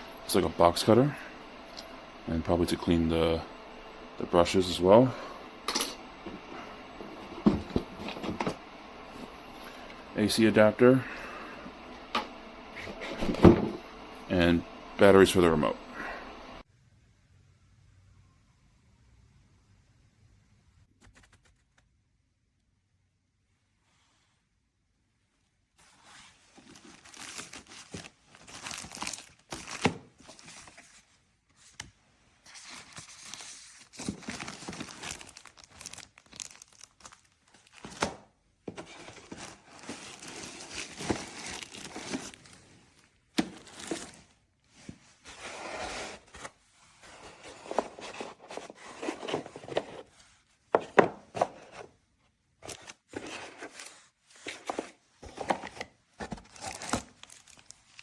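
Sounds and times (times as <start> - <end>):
packaging crinkling and tearing: 26.5 - 30.8, 32.5 - 38.2, 38.9 - 44.3, 55.4 - 58.0.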